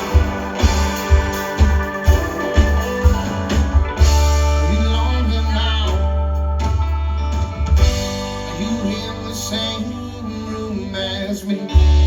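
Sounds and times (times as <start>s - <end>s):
steady drum beat: 0.0s - 5.1s
live band playing: 0.0s - 12.0s.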